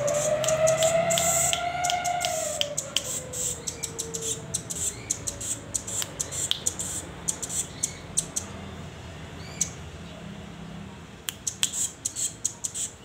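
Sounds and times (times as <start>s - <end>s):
low falling tone: 0.0s - 4.2s
songbird chip calls: 0.0s - 8.5s, 11.3s - 13.0s.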